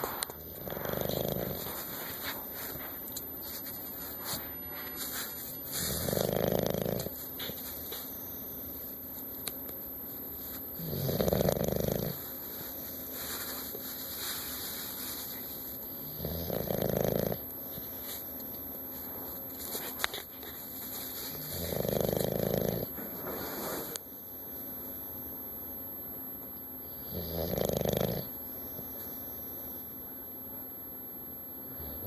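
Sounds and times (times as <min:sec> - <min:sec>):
dog snoring: 0:00.0 - 0:08.0, 0:10.4 - 0:18.2, 0:20.9 - 0:24.0, 0:26.8 - 0:28.4, 0:31.7 - 0:32.0.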